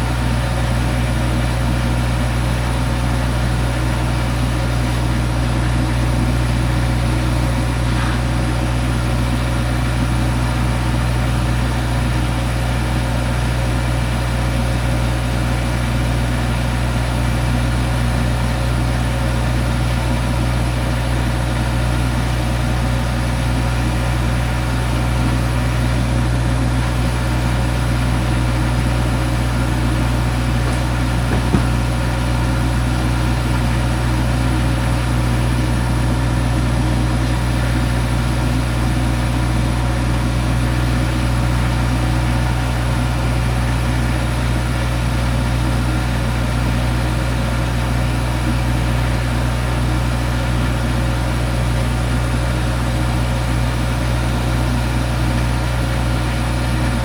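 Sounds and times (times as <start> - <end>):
engine idling: 0.0 - 57.0
short knock: 30.6 - 31.9.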